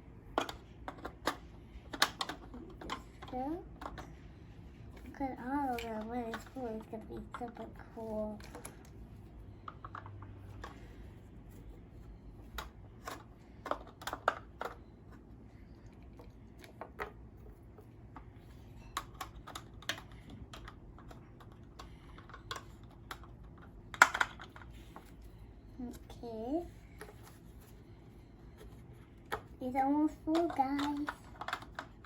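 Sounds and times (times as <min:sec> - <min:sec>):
plastic toys clicking on case: 0:00.3 - 0:04.1, 0:05.6 - 0:10.8, 0:12.4 - 0:14.9, 0:19.0 - 0:25.2, 0:28.6 - 0:32.0.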